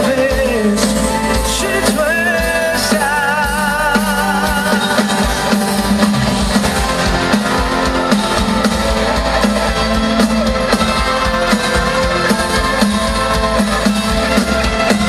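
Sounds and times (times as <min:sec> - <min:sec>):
person singing with vibrato: 0:00.0 - 0:06.0
band playing drums and guitar: 0:00.0 - 0:15.0.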